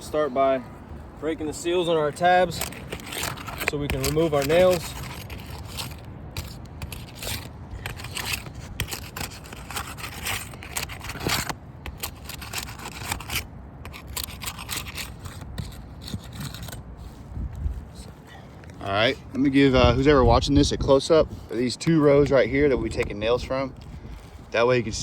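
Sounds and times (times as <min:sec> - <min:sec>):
roof shingles scraping and crackling: 0:01.2 - 0:17.2.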